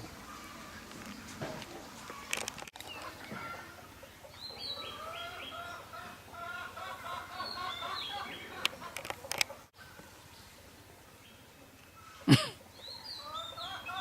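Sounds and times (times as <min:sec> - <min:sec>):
chickens clucking: 0:00.2 - 0:14.0.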